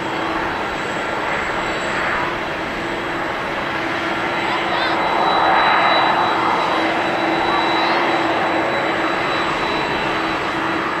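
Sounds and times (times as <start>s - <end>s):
jet engines roaring: 0.0s - 11.0s.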